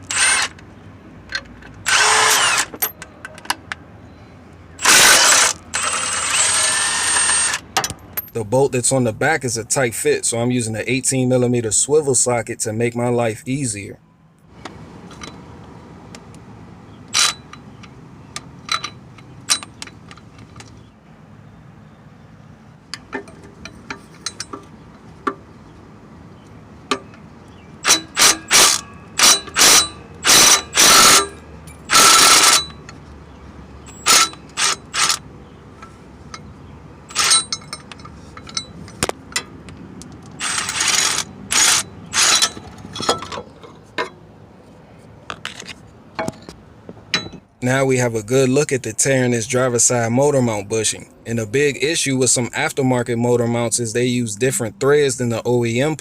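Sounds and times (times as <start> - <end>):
impact wrench bursts: 0.0 - 0.6, 1.8 - 3.0, 4.8 - 7.7, 17.1 - 17.6, 27.8 - 32.9, 33.9 - 35.2, 37.1 - 39.1, 40.4 - 42.8
tool clicks and knocks: 45.3 - 47.5.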